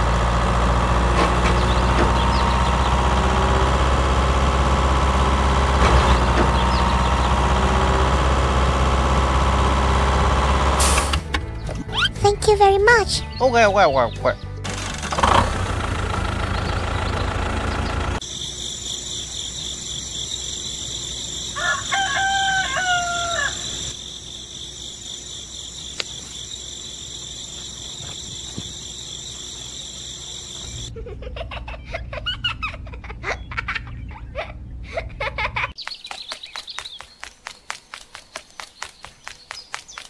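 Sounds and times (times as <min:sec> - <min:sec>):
rooster crowing: 0:21.4 - 0:23.9.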